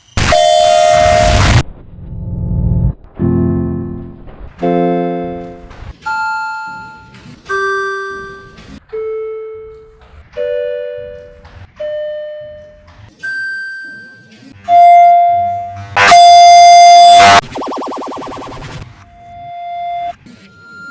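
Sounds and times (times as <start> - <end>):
harsh distorted chime: 0.0 - 1.6, 16.0 - 20.9
elevator chime dings: 4.6 - 9.8
buzzing pulsing warble: 16.0 - 19.0.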